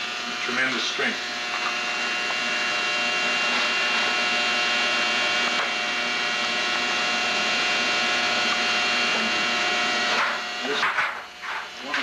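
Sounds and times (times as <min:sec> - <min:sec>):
steady mechanical hum with hiss: 0:00.0 - 0:02.7.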